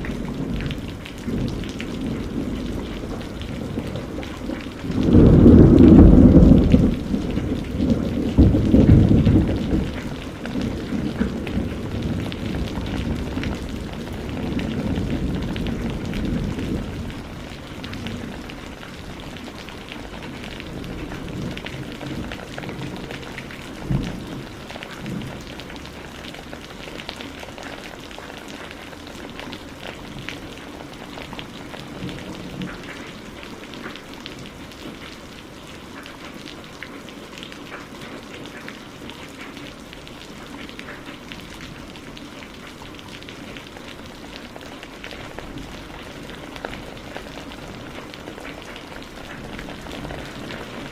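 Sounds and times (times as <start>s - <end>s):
thunder rumbling: 0.0s - 26.6s
steady rain: 0.0s - 50.9s.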